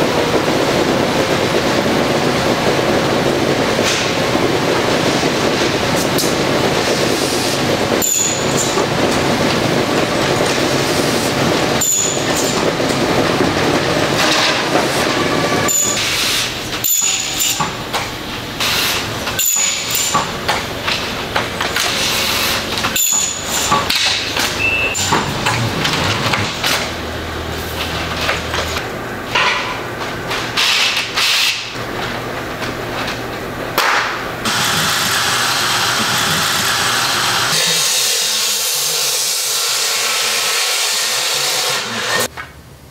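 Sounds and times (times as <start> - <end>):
factory machinery running: 0.0 - 42.8
clanks and knocks: 11.8 - 16.0, 22.7 - 27.0.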